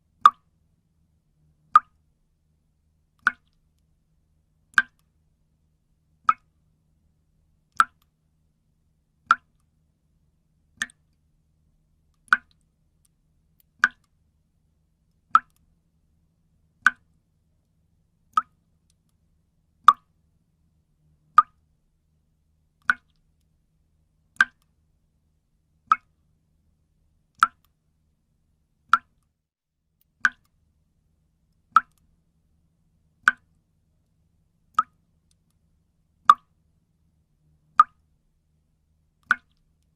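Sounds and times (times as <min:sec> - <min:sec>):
water dripping: 0:01.7 - 0:02.0, 0:03.2 - 0:03.6, 0:04.7 - 0:05.1, 0:06.3 - 0:06.5, 0:07.7 - 0:08.1, 0:10.8 - 0:11.0, 0:12.2 - 0:12.7, 0:13.6 - 0:14.2, 0:16.8 - 0:17.1, 0:18.3 - 0:18.6, 0:21.4 - 0:21.6, 0:22.8 - 0:23.2, 0:24.4 - 0:24.7, 0:25.9 - 0:26.1, 0:30.2 - 0:30.6, 0:31.6 - 0:32.1, 0:33.2 - 0:33.6, 0:34.7 - 0:35.6, 0:37.7 - 0:38.0, 0:39.2 - 0:39.7.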